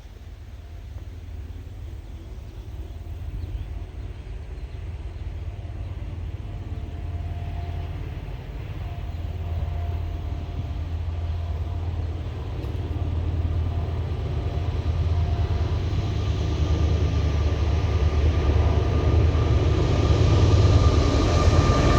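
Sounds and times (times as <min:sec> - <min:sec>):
diesel locomotive engine rumble: 0:00.0 - 0:21.9.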